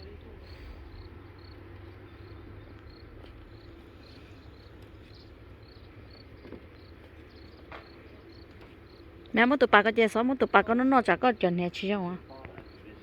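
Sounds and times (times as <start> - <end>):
cricket chirping: 0.0 - 9.2, 12.2 - 13.0
low steady rumble: 0.0 - 13.0.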